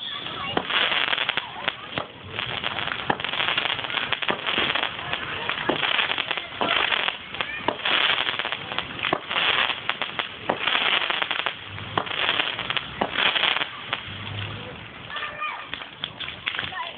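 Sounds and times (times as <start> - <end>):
fireworks crackling and banging: 0.0 - 16.9.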